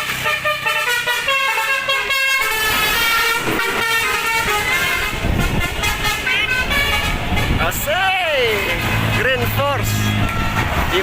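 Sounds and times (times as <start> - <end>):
multi-tone air horn tune: 0.0 - 7.6
engine rumble: 0.0 - 11.0.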